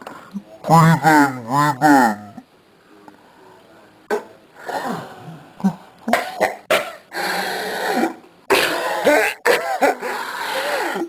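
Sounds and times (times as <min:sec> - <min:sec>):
harsh throat clearing: 0:04.1 - 0:11.0
person coughing: 0:08.5 - 0:10.2.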